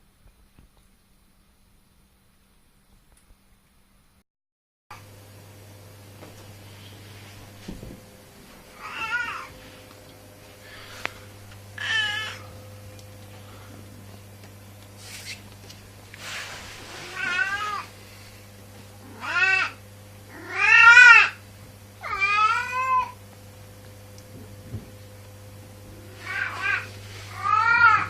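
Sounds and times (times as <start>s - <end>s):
cat meowing: 8.8s - 9.5s, 11.8s - 12.5s, 17.0s - 17.9s, 19.1s - 21.4s, 22.0s - 23.2s, 26.2s - 28.0s.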